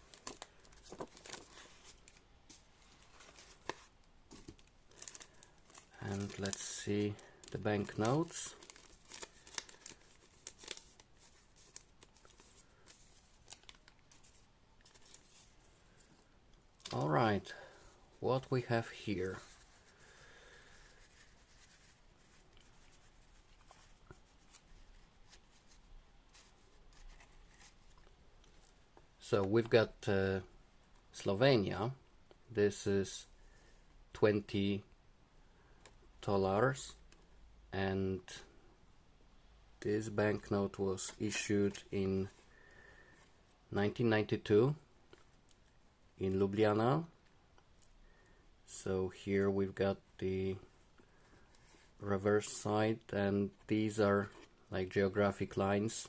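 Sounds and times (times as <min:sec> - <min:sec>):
rustling of paper and plastic wrapping: 0:00.0 - 0:28.8.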